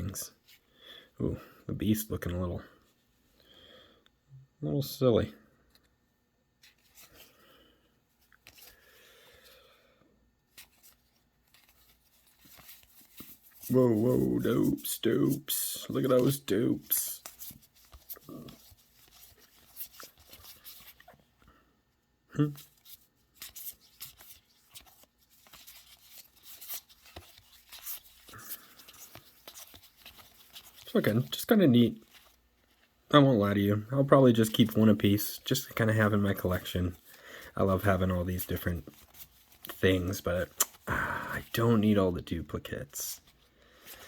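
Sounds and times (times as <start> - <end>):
trading cards rustling and clicking: 8.2 - 9.0, 10.5 - 21.3, 22.5 - 32.9, 34.3 - 41.9
trading cards flipped by hand: 38.9 - 40.9.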